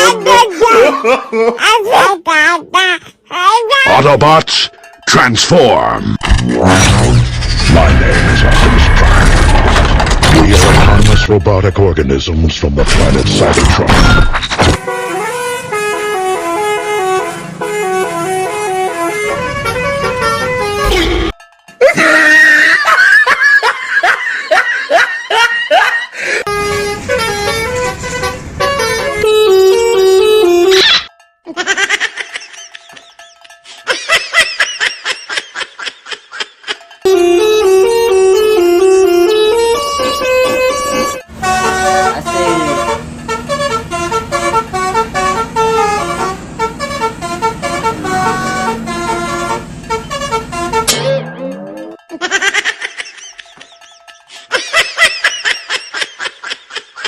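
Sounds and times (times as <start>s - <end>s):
multi-tone bus horn tune: 14.7s - 21.4s, 26.2s - 31.1s, 37.0s - 52.1s.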